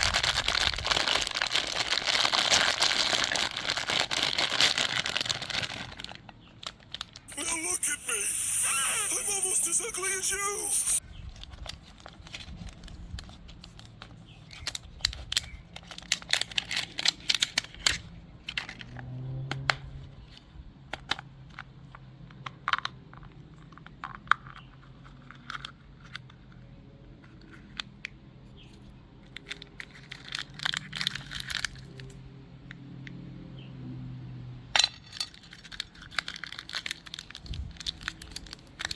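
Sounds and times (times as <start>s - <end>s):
plastic wrapper crinkling and tearing: 0.0s - 8.2s, 11.0s - 18.7s, 29.3s - 32.2s, 35.2s - 38.9s.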